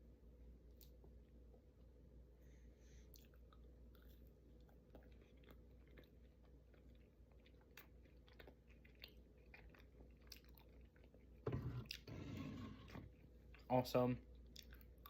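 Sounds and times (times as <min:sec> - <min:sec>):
faint chewing: 0:02.8 - 0:12.1, 0:12.8 - 0:15.0.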